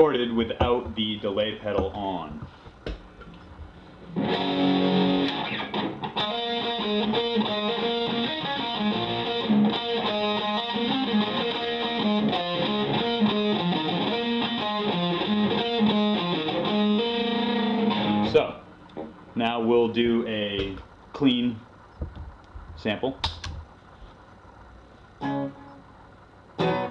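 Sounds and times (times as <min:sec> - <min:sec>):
distorted electric guitar riff: 0:04.1 - 0:18.6, 0:25.2 - 0:25.9, 0:26.6 - 0:26.9.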